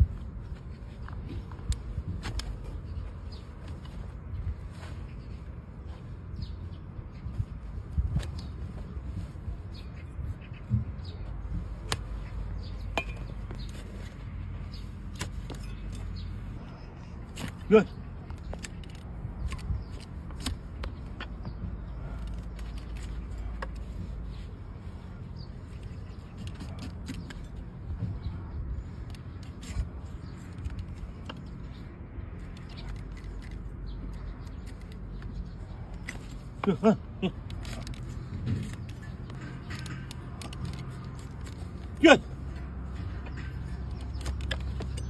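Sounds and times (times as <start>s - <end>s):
steady low rumble: 0.0s - 17.4s.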